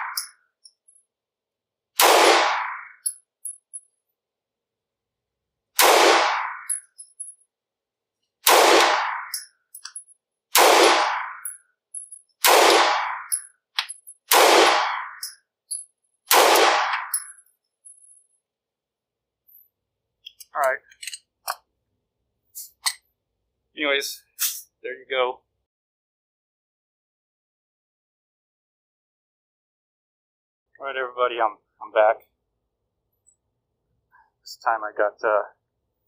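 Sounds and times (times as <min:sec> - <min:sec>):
pistol shots with echo: 0:02.0 - 0:02.8, 0:05.8 - 0:06.8, 0:08.4 - 0:09.5, 0:10.6 - 0:11.5, 0:12.4 - 0:13.4, 0:14.3 - 0:15.3, 0:16.3 - 0:17.3
faint small clinks: 0:06.7 - 0:07.5, 0:11.5 - 0:12.4, 0:15.2 - 0:16.2, 0:17.2 - 0:18.4.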